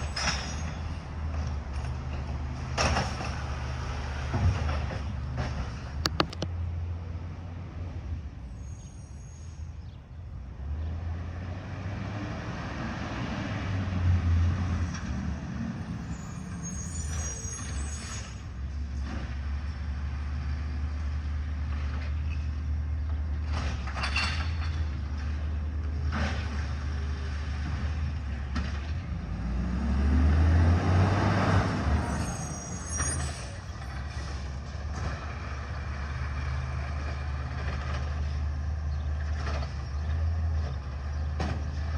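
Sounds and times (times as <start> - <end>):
short clanks: 4.3 - 6.6
air brakes hissing: 8.6 - 9.9, 16.0 - 18.5, 32.0 - 34.4
diesel truck engine revving: 10.4 - 24.0, 24.6 - 41.9.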